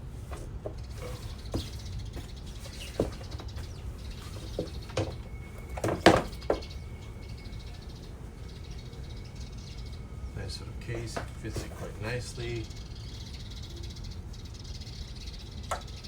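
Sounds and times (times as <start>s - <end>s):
handling knocks and rubs: 0.0s - 7.1s, 10.8s - 12.5s.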